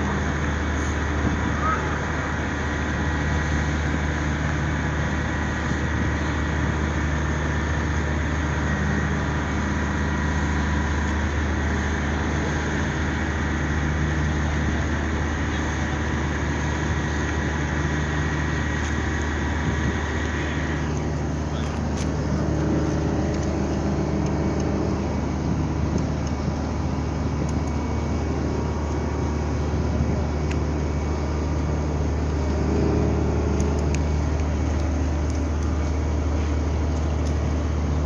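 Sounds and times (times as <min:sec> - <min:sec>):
ship diesel engine humming: 0:00.0 - 0:38.0.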